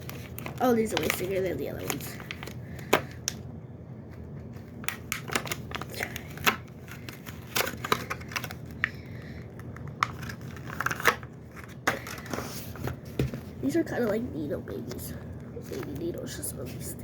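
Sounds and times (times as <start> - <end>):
plastic packaging crinkling: 0.0 - 3.4, 4.5 - 13.0.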